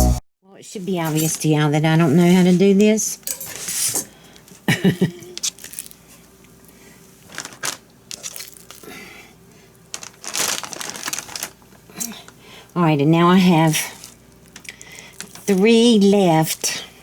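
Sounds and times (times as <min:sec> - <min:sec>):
crinkling rustle: 0:05.4 - 0:12.4, 0:13.7 - 0:16.6.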